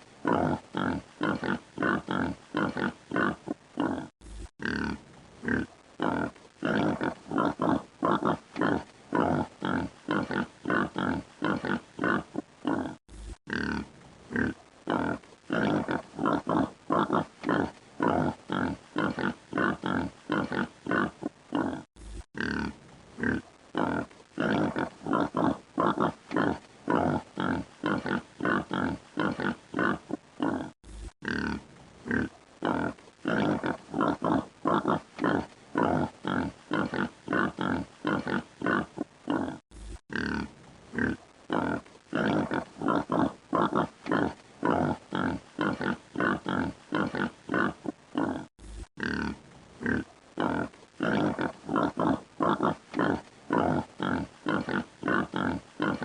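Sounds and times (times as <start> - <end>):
pig grunting: 0.2 - 56.0.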